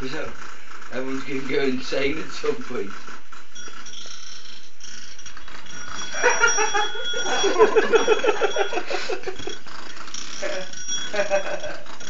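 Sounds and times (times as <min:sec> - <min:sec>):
electric doorbell ringing: 0:03.5 - 0:12.0
person laughing: 0:06.2 - 0:09.5.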